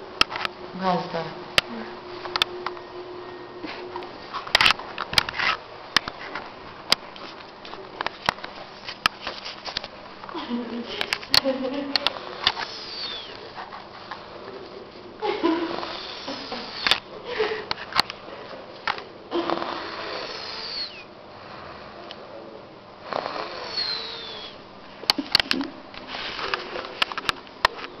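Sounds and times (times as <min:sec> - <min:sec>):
woman snoring: 0:15.5 - 0:16.9, 0:19.3 - 0:22.0, 0:23.0 - 0:24.6.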